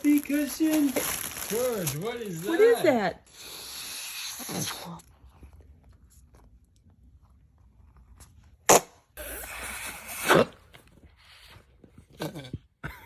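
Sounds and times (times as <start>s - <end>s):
whoopee cushion fart noise: 8.6s - 10.6s.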